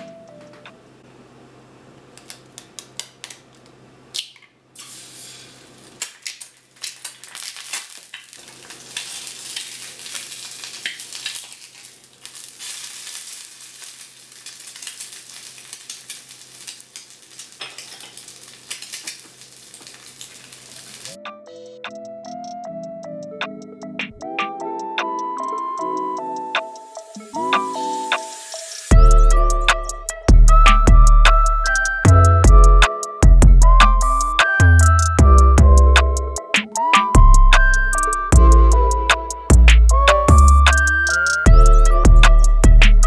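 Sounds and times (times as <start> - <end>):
food sizzling in a pan: 4.8 - 21.2, 26.7 - 29.0
utensils and dishes clinking: 17.6 - 19.0.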